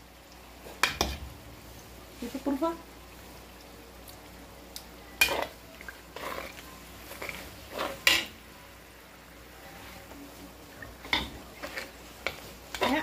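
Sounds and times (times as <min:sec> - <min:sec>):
metal spoon scraping a pot: 0:06.2 - 0:08.3.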